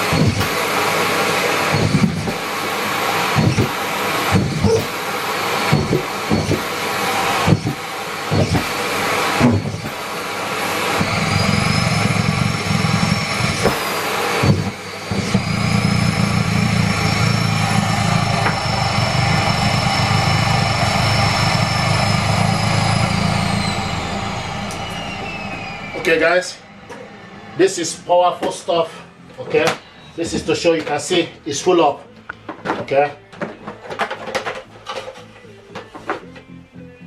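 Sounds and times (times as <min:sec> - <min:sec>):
vacuum cleaner motor whine: 0:00.0 - 0:35.6
knocks and rattles: 0:32.4 - 0:36.3.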